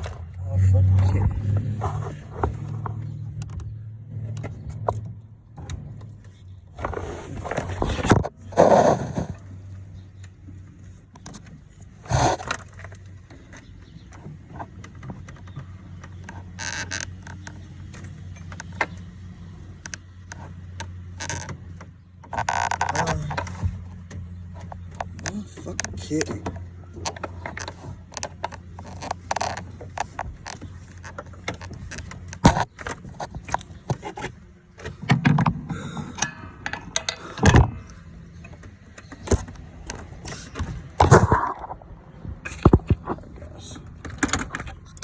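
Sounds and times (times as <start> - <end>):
car engine idling: 0.0 - 8.5, 12.7 - 45.0.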